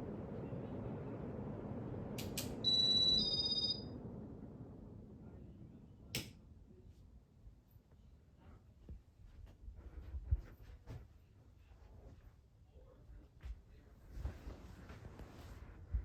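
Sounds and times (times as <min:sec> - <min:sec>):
ceiling fan whooshing: 0:00.0 - 0:16.0
two-note electronic beep: 0:02.7 - 0:03.9.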